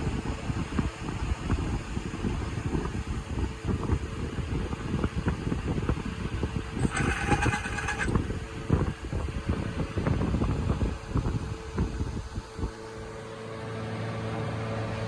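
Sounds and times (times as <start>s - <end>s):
engine running with knocks: 6.8s - 8.3s.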